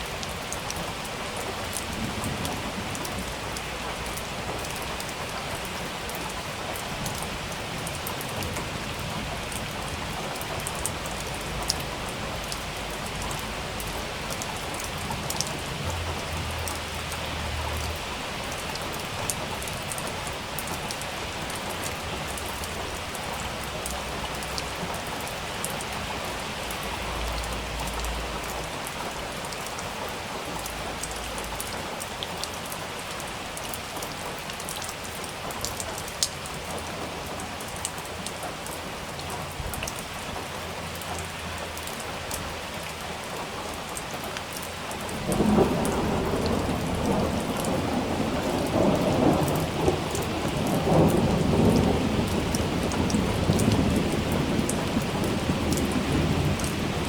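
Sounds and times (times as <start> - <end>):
rain pattering: 0.0 - 57.0
thunder rumbling: 45.2 - 57.0.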